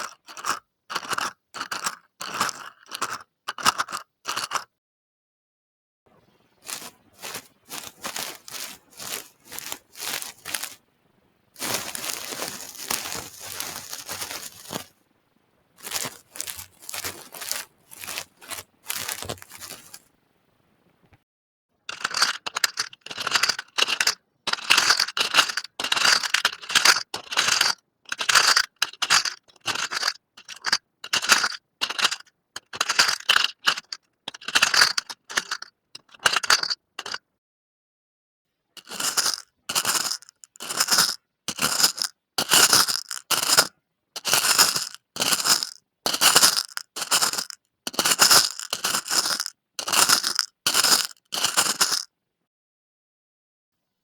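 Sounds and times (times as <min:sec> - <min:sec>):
rustling: 0:06.4 - 0:10.9, 0:11.5 - 0:15.0, 0:15.7 - 0:21.2, 0:38.8 - 0:52.1
trinkets scraping and crunching: 0:06.6 - 0:10.8, 0:11.6 - 0:14.9, 0:15.8 - 0:20.1, 0:38.8 - 0:52.1.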